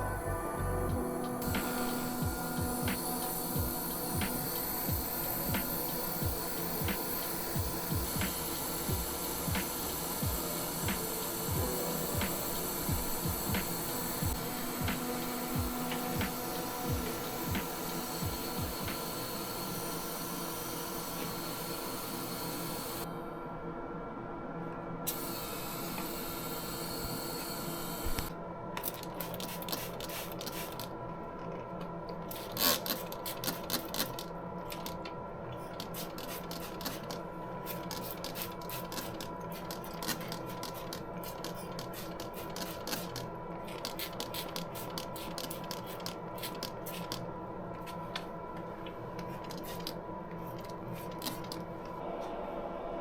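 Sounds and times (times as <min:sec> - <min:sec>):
steady machine hum: 0:00.0 - 0:28.8.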